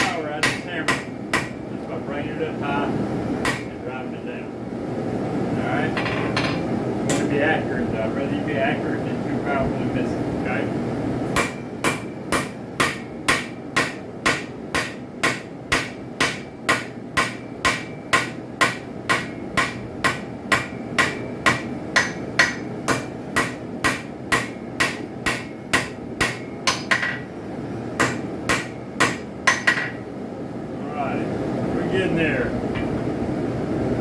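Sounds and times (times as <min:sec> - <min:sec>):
hammer striking metal on anvil: 0:00.0 - 0:01.6, 0:03.4 - 0:03.7, 0:11.4 - 0:27.3, 0:28.0 - 0:30.0.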